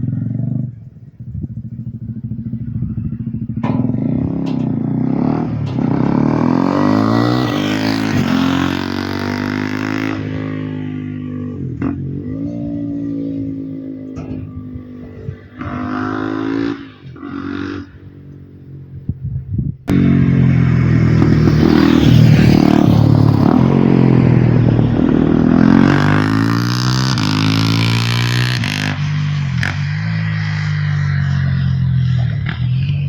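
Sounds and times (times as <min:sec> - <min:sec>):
motorcycle engine revving: 0:00.0 - 0:33.0
motorcycle passing by: 0:00.0 - 0:33.0.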